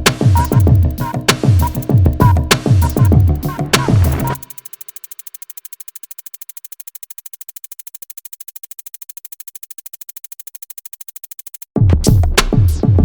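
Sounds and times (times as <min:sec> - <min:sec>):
bass-heavy drum-machine beat: 0:00.0 - 0:04.8, 0:11.8 - 0:13.0.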